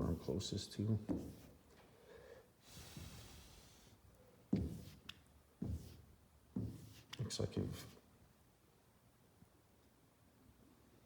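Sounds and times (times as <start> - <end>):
squeegee swishing on wet paint: 5.7 - 7.2.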